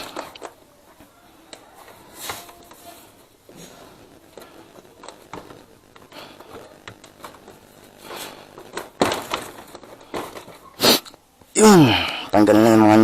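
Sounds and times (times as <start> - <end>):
scraping rustle: 1.6 - 11.1.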